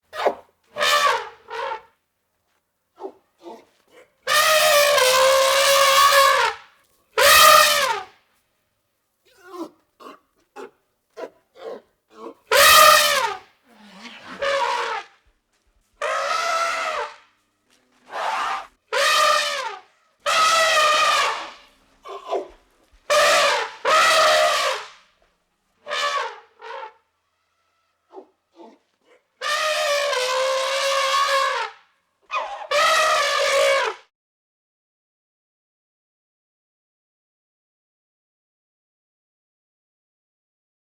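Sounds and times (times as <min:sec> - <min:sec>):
elephant trumpeting: 0:00.1 - 0:01.8, 0:03.0 - 0:06.6, 0:07.2 - 0:08.1, 0:09.3 - 0:15.2, 0:16.0 - 0:25.0, 0:25.9 - 0:27.0, 0:28.1 - 0:31.7, 0:32.3 - 0:34.0.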